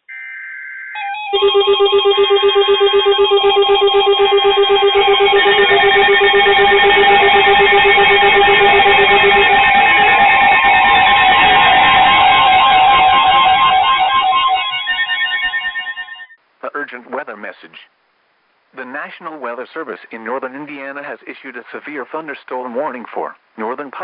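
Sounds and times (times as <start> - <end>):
steady electronic tones: 1.3 - 16.4
weather alert radio alarms: 1.3 - 16.4
low pulsing beep: 1.4 - 16.4
pulsing beeps: 1.4 - 16.4.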